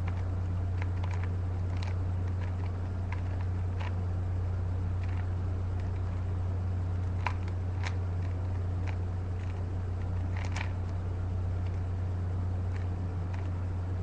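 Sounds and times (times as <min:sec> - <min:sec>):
puzzle cube plastic clicks: 0:00.0 - 0:04.0, 0:05.0 - 0:06.3, 0:07.0 - 0:11.0
steady low hum: 0:00.0 - 0:14.0.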